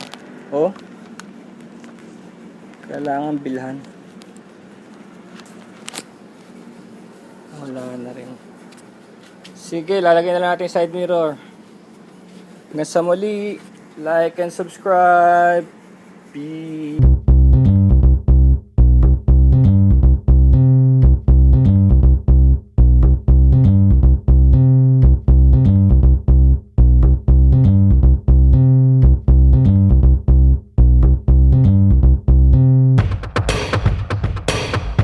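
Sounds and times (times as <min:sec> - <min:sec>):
bass-heavy plucked melody with beat: 0:17.0 - 0:35.0
drums and percussion: 0:17.0 - 0:35.0.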